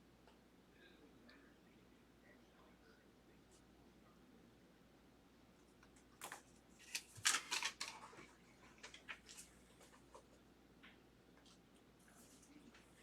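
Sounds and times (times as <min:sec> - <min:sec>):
cards and plastic packaging rustling: 0:06.2 - 0:10.3.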